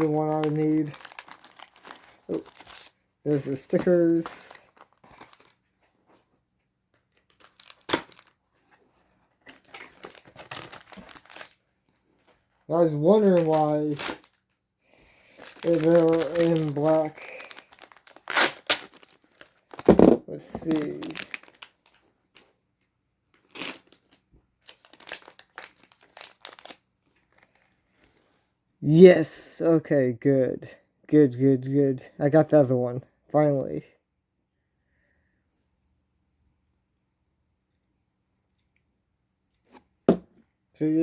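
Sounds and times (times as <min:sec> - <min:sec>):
plastic packaging crinkling: 0:00.0 - 0:05.6, 0:07.1 - 0:08.7, 0:09.4 - 0:14.6, 0:15.2 - 0:22.5, 0:23.3 - 0:27.7.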